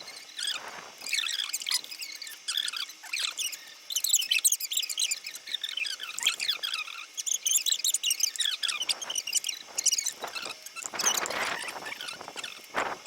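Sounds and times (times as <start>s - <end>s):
high chirps and squeaks: 0.0s - 13.0s
brief rustle: 8.8s - 13.0s.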